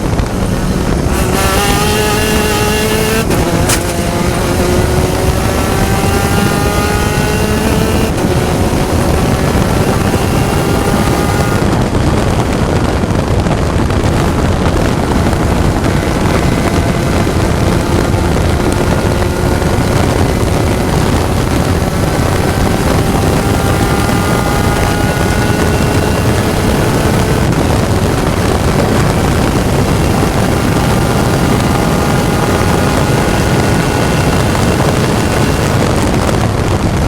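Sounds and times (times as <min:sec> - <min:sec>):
race car engine running hard: 0:00.0 - 0:37.0
wind and road noise: 0:00.0 - 0:37.0.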